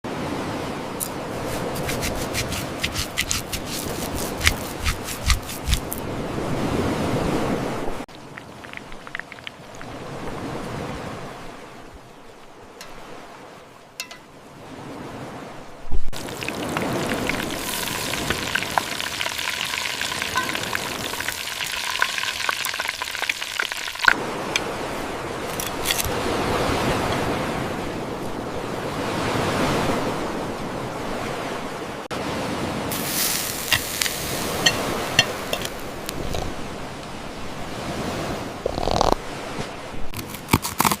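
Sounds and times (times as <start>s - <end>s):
fat popping: 16.1s - 24.2s
meat sizzling in a pan: 16.2s - 24.1s, 32.9s - 34.8s.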